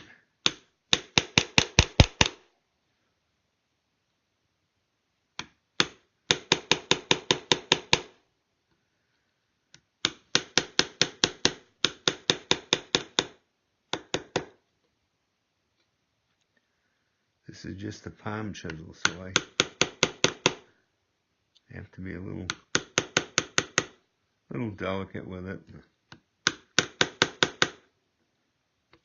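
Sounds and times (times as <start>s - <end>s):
chisel tapping into wood: 0.4s - 2.4s, 5.4s - 8.2s, 9.7s - 14.6s, 18.6s - 20.7s, 22.5s - 24.0s, 26.1s - 27.9s.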